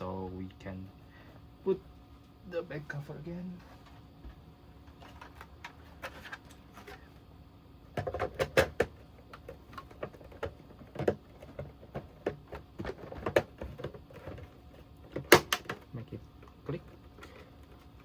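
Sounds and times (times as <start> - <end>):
cover knocks and clicks: 8.0 - 14.5.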